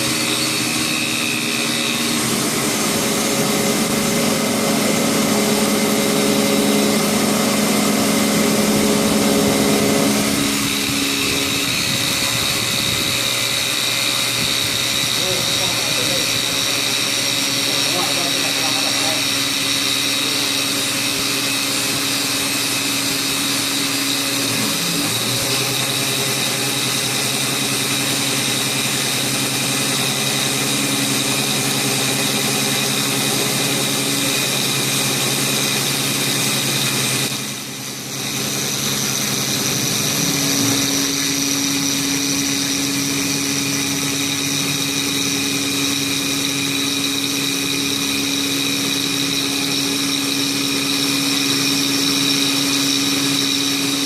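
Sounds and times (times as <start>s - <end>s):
milling machine motor whine: 0.0s - 54.0s.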